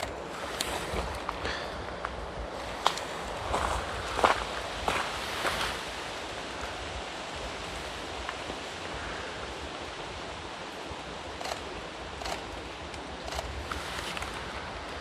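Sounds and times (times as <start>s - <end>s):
wet weather hiss: 0.0s - 15.0s
footsteps: 2.8s - 5.8s.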